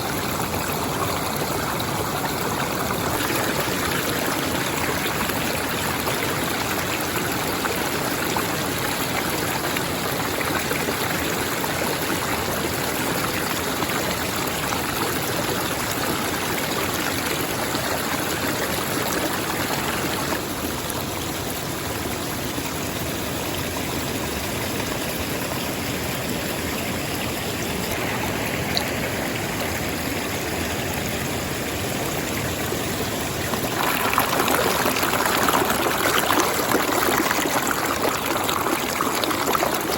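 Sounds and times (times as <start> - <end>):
stream water splashing over rocks: 0.0 - 39.9.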